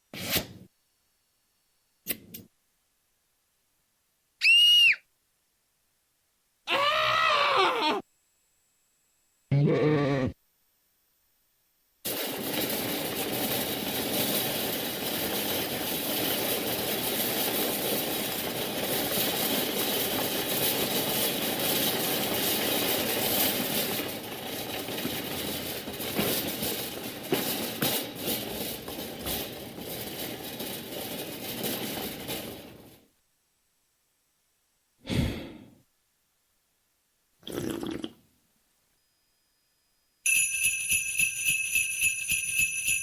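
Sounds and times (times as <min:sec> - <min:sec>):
dense rumbling and rattling: 0:12.1 - 0:32.9.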